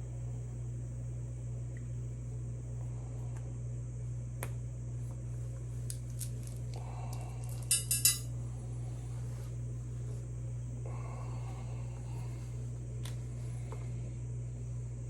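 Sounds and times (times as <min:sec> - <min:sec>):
steady low hum: 0:00.0 - 0:15.0
sharp metal clinks: 0:07.5 - 0:08.3.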